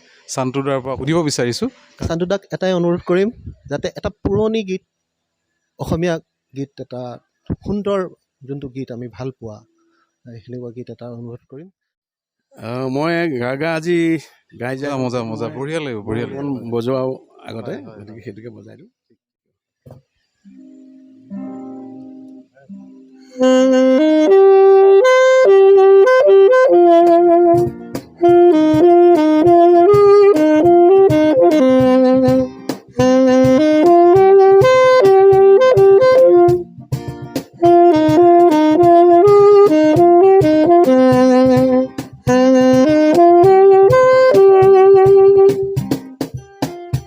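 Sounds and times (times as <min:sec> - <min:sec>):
rhythmic accompaniment: 0:19.9 - 0:47.0
saxophone melody: 0:20.5 - 0:46.2.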